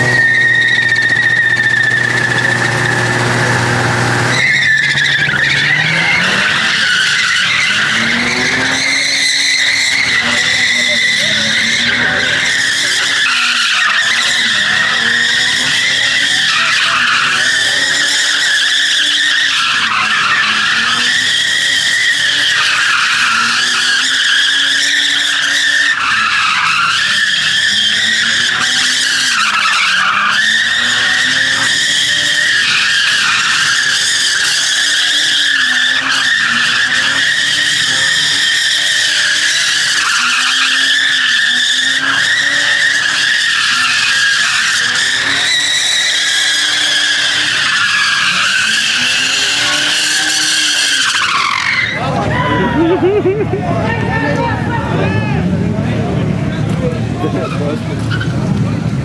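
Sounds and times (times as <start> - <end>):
engine revving high: 0.0 - 59.0
tires screeching: 0.0 - 59.0.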